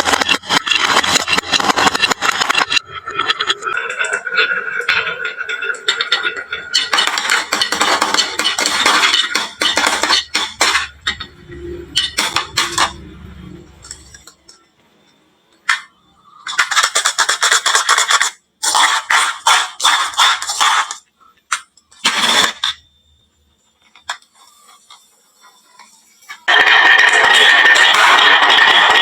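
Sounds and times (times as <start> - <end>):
marbles clattering down wooden run: 26.5 - 29.0.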